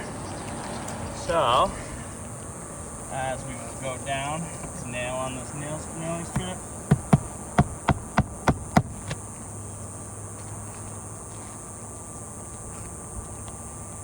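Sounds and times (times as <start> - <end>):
insects droning: 0.0 - 14.0
hammer striking nail: 6.3 - 9.2.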